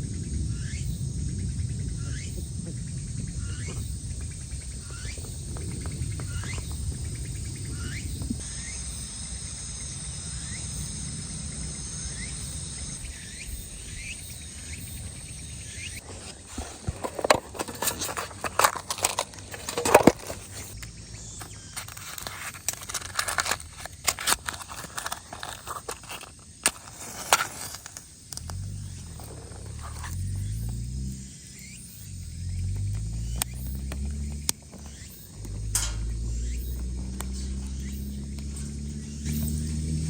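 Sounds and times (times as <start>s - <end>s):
insects trilling: 0.0s - 40.0s
low outdoor rumble: 0.0s - 40.0s
sharp clicks and knocks: 32.7s - 39.9s.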